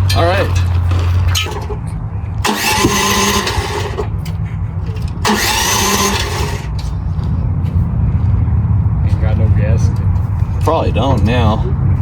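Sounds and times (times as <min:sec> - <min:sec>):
starter cranking engine: 0:02.4 - 0:04.2, 0:04.8 - 0:06.8.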